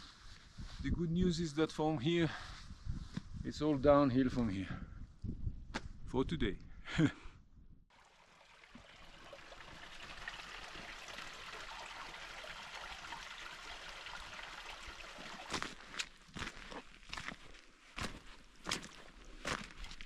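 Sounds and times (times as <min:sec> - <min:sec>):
running water: 0:07.9 - 0:16.4.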